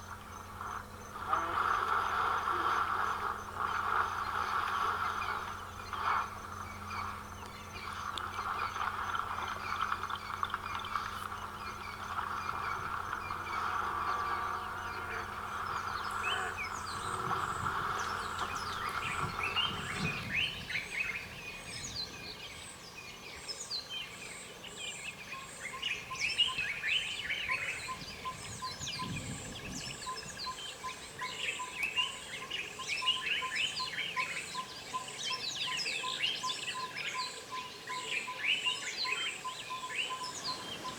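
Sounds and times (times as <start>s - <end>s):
insect pulsing trill: 0.0s - 20.6s
birds chirping and calling: 0.0s - 22.4s, 26.0s - 40.9s
low hum with hiss: 0.0s - 40.9s.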